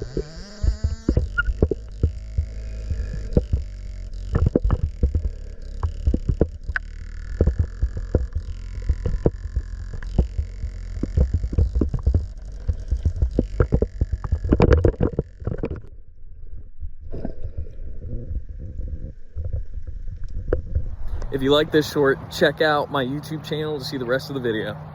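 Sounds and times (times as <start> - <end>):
steady low water noise: 0.0 - 24.9.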